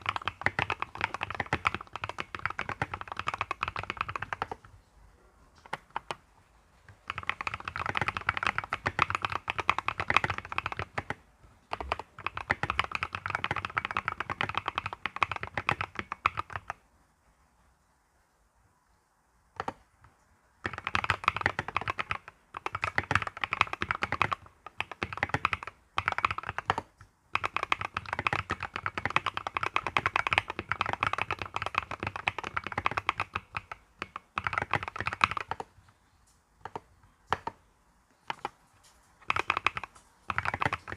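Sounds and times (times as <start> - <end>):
mechanical keyboard typing: 0.0 - 4.7, 5.6 - 6.3, 6.9 - 16.8, 19.6 - 19.8, 20.6 - 35.9, 36.6 - 37.6, 38.2 - 38.6, 39.2 - 40.9.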